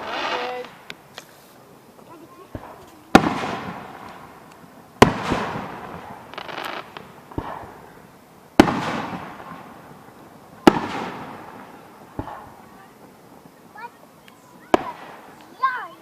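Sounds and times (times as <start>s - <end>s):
short hiss: 0.0s - 3.1s
fireworks booming with echo: 0.0s - 16.0s
small fireworks pops: 0.0s - 16.0s.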